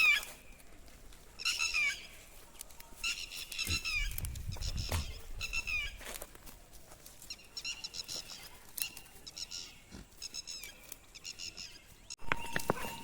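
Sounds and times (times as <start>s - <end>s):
goat bells jingling: 0.0s - 13.0s.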